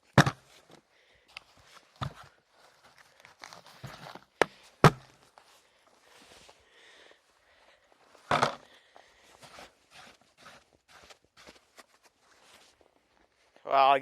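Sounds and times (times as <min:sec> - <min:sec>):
plastic canister thumps: 0:00.2 - 0:00.4, 0:04.4 - 0:05.1, 0:08.3 - 0:08.6.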